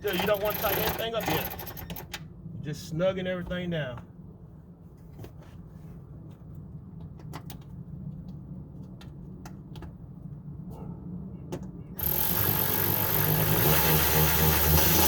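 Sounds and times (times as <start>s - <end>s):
steady low hum: 11.9s - 15.0s.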